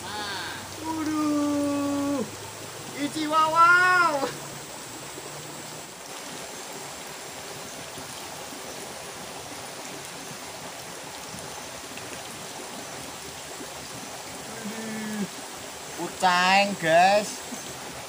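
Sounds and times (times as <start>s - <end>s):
river water rushing: 0.0s - 18.0s.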